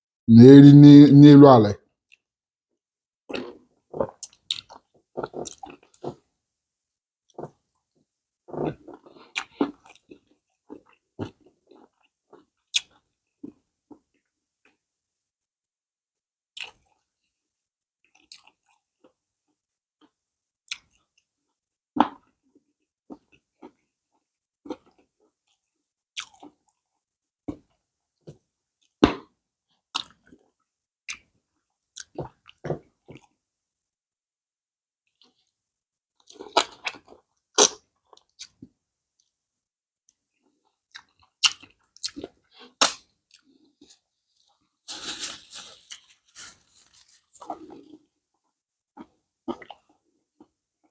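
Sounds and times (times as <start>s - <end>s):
person chewing and smacking: 3.3s - 6.2s, 8.5s - 14.8s, 16.6s - 17.0s, 18.0s - 19.2s, 23.1s - 26.8s, 29.9s - 33.4s, 36.2s - 39.3s, 40.1s - 48.2s, 49.0s - 50.9s.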